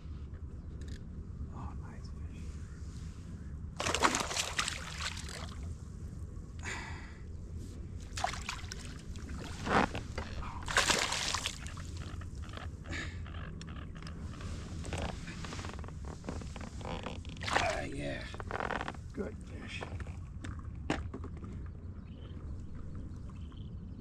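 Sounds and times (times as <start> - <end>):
steady low rumble: 0.0 - 20.9
fish splashing in water: 3.8 - 5.6, 8.1 - 9.7, 10.6 - 12.2, 17.4 - 17.9.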